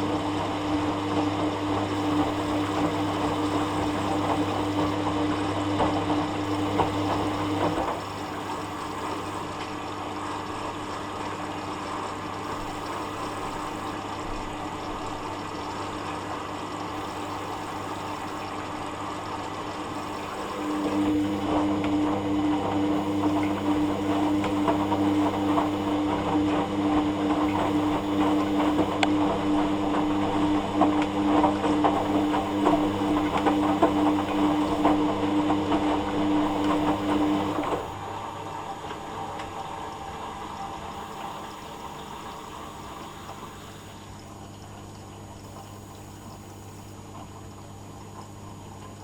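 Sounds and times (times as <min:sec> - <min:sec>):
water in washing machine drum: 0:00.0 - 0:09.6, 0:16.9 - 0:38.0
washing machine pump humming: 0:00.0 - 0:49.0
water gurgling: 0:00.0 - 0:49.0.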